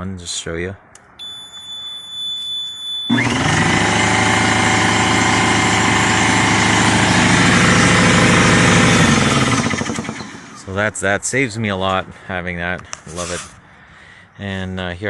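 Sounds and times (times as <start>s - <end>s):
high electronic beep: 1.2s - 3.6s
electric air compressor running: 3.1s - 10.7s.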